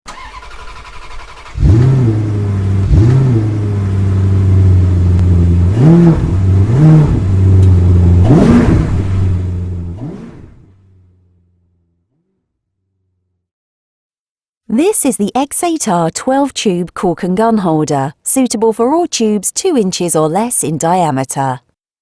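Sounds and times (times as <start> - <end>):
engine idling and revving: 0.1 - 12.3.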